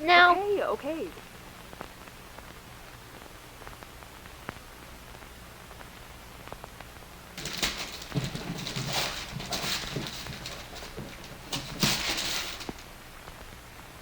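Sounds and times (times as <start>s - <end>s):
wrapping paper rustling and tearing: 7.4s - 12.9s.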